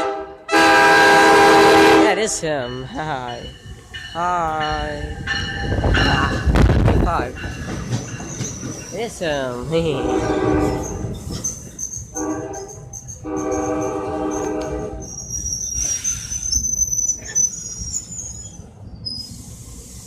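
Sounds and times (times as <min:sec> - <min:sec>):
train air horn blasts: 0:00.0 - 0:02.2, 0:10.0 - 0:11.0, 0:12.1 - 0:15.1
train rumble: 0:00.0 - 0:20.0
train wheels squealing: 0:07.5 - 0:09.0, 0:10.6 - 0:20.0.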